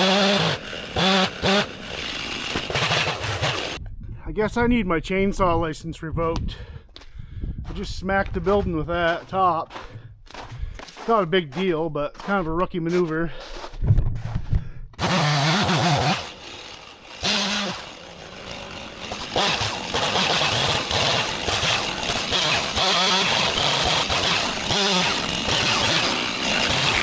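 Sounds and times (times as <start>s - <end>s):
chainsaw revving: 0.0s - 3.8s, 15.0s - 27.0s.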